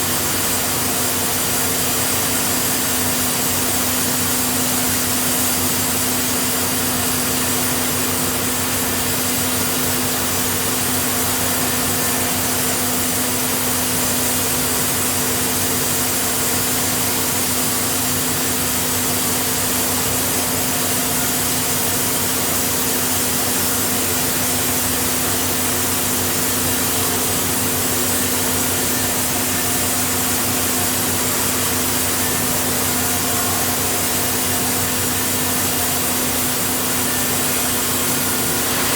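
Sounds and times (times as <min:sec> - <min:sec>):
bandsaw mill cutting log: 0:23.4 - 0:38.9.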